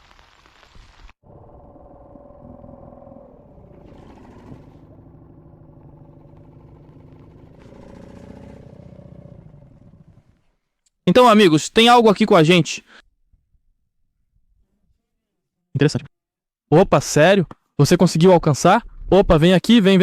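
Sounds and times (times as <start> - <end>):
engine running steadily: 2.0 - 10.4.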